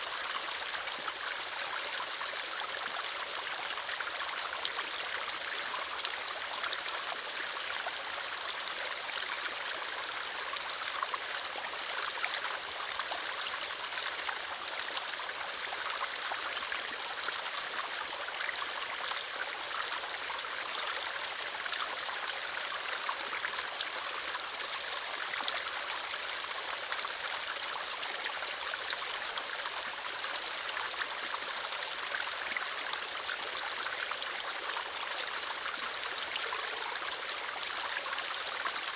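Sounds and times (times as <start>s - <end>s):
stream water running: 0.0s - 38.9s.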